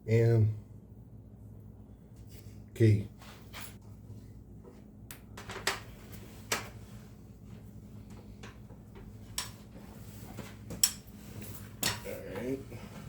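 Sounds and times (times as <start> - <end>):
faint low hum: 0.0 - 13.0
metal hardware clicks and knocks: 11.8 - 12.2.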